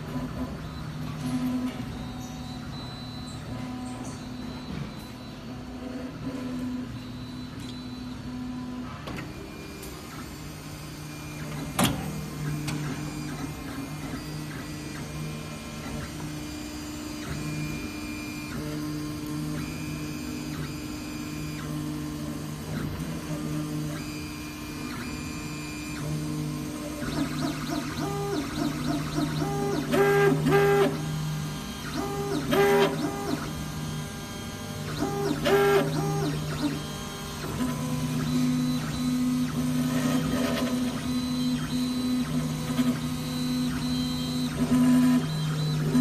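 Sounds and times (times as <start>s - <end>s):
stepper motors whining: 9.3s - 46.0s.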